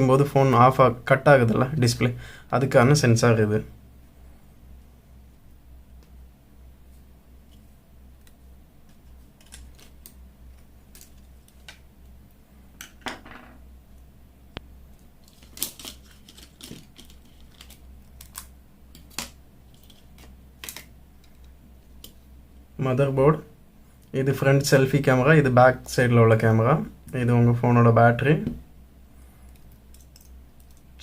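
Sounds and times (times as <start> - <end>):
steady low hum: 0.0 - 31.0
small parts clicking and tapping: 29.5 - 31.0.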